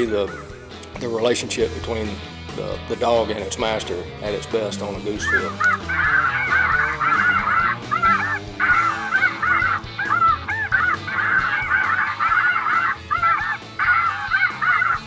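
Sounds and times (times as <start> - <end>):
flock of geese honking: 5.1 - 15.0.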